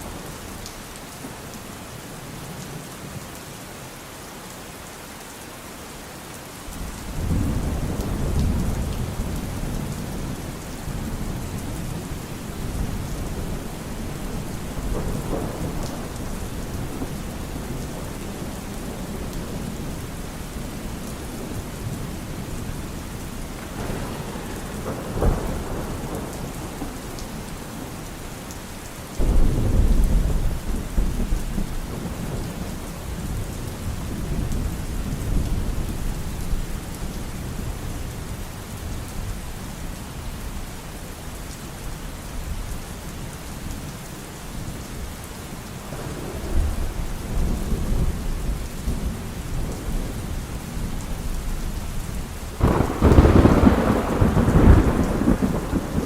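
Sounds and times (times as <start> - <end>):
steady rain: 0.0 - 56.0
thunder rumbling: 6.8 - 28.5, 29.2 - 38.0, 45.9 - 56.0
thunder crack: 23.5 - 27.5, 52.6 - 56.0.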